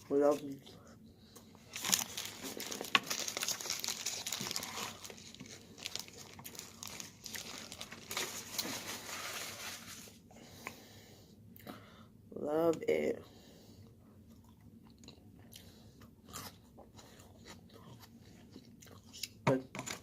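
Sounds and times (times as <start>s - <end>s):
food wrapper crinkling: 1.7s - 10.2s.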